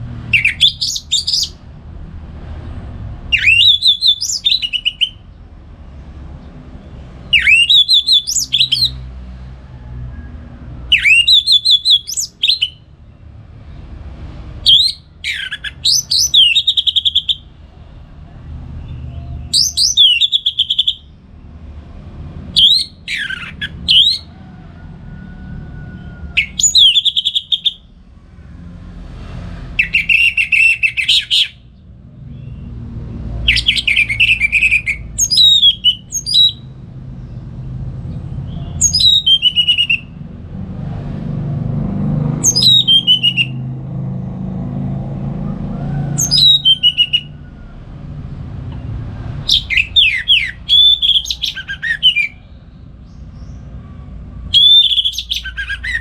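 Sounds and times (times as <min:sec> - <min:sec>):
low steady rumble: 0:00.0 - 0:19.8, 0:27.7 - 0:56.0
bird singing whistled notes: 0:00.3 - 0:01.6, 0:03.3 - 0:05.2, 0:07.2 - 0:09.0, 0:10.9 - 0:12.8, 0:14.6 - 0:17.5, 0:18.9 - 0:21.1, 0:22.6 - 0:24.3, 0:26.4 - 0:27.9, 0:29.8 - 0:32.7, 0:33.4 - 0:36.8, 0:38.5 - 0:40.2, 0:42.4 - 0:43.6, 0:46.2 - 0:47.4, 0:49.4 - 0:53.6, 0:54.5 - 0:56.0.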